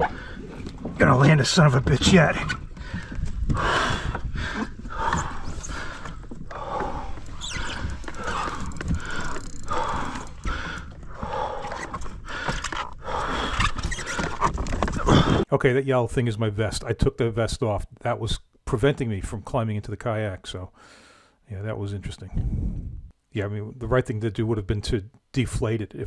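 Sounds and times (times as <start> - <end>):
wind: 0.0 - 15.5
man breathing hard: 2.8 - 15.5, 20.8 - 21.4.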